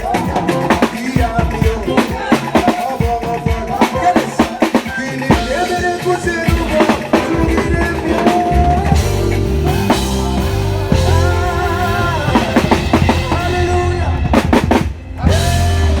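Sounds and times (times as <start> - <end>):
band playing: 0.0 - 16.0
drum kit: 0.0 - 16.0
deep bass line: 7.4 - 16.0.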